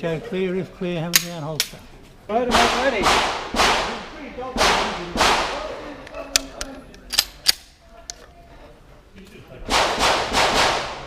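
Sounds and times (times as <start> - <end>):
pistol shots echoing: 2.5 - 5.7, 9.7 - 11.0.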